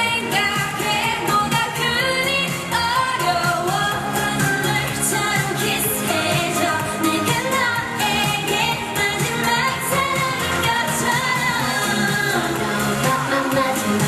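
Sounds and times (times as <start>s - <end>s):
pop song with singing: 0.0s - 14.0s.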